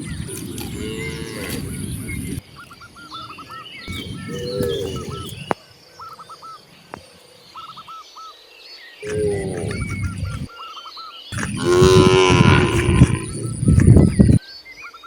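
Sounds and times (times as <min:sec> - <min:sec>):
cows mooing: 0:00.0 - 0:02.2, 0:09.0 - 0:10.5, 0:11.4 - 0:14.4
small birds chirping: 0:00.0 - 0:15.0.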